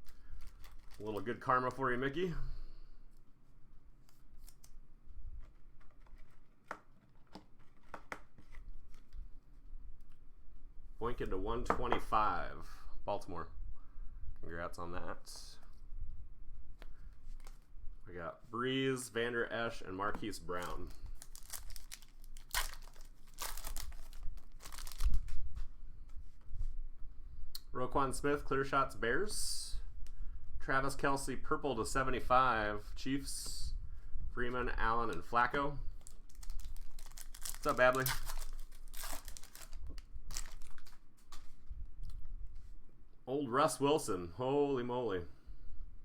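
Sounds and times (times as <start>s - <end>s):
card pack wrappers crinkling: 0.0s - 1.4s, 20.3s - 25.4s, 35.9s - 41.4s.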